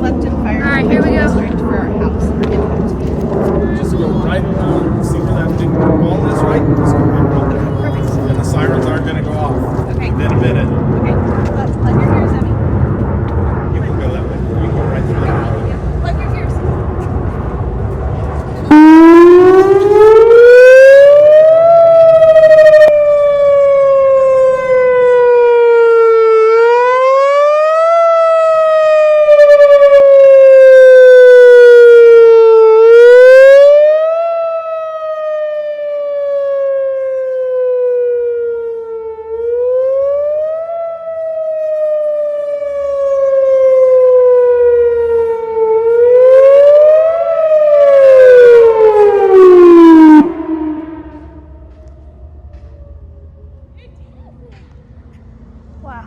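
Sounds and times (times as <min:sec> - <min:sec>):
outdoor warning siren wailing: 0:18.6 - 0:53.8.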